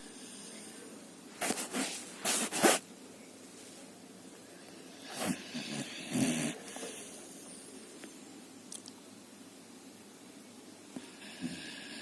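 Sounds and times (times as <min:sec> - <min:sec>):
dog snoring: 0:05.0 - 0:07.2, 0:11.0 - 0:12.0.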